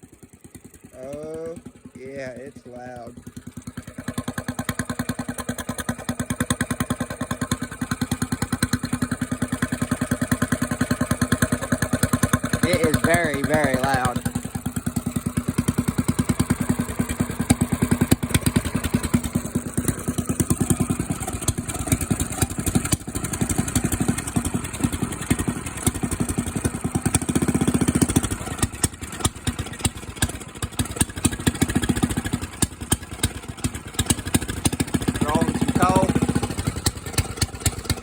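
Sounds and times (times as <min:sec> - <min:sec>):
loud diesel engine exhaust: 0:00.9 - 0:03.2, 0:11.0 - 0:29.6, 0:30.3 - 0:38.0.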